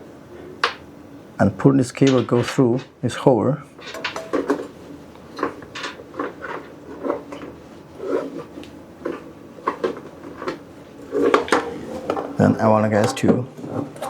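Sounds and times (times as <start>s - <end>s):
cable handling knocks and rubbing: 3.8s - 14.0s.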